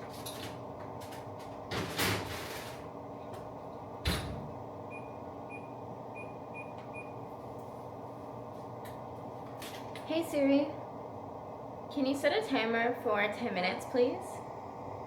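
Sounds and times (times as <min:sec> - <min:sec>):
oven door scraping open: 0:00.0 - 0:02.9
oven door shutting thud: 0:04.0 - 0:04.5.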